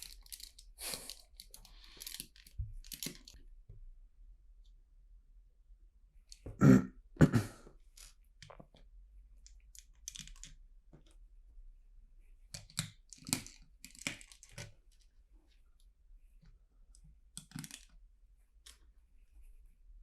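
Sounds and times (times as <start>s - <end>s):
plastic bricks clicking and clattering: 0.0s - 3.4s, 9.8s - 10.6s, 12.6s - 14.7s, 17.4s - 18.0s.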